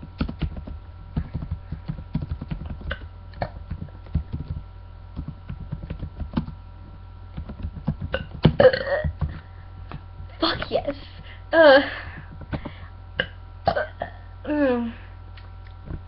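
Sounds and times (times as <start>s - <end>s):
steady low hum: 0.0s - 16.0s
typing on computer keyboard: 0.2s - 3.0s, 3.7s - 4.6s, 5.2s - 6.6s, 7.4s - 8.1s.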